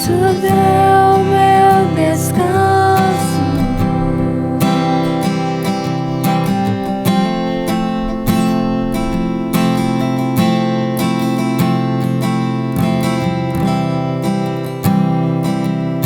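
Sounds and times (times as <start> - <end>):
person singing: 0.0 - 7.2
acoustic guitar strumming chords: 0.0 - 16.0.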